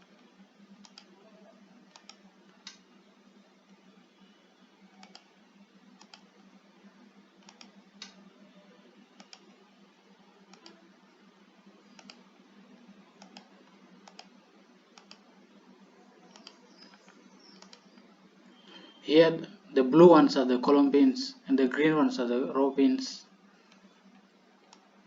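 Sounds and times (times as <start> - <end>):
computer mouse clicks: 0.8 - 1.1, 1.9 - 2.8, 4.9 - 5.3, 6.0 - 6.5, 7.4 - 8.2, 9.2 - 9.5, 10.5 - 10.8, 11.9 - 12.2, 13.2 - 15.3, 16.3 - 18.1.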